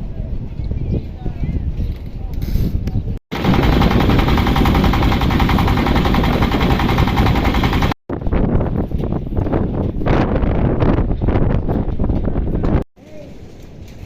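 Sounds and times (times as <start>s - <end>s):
loud motor running: 3.3s - 8.0s.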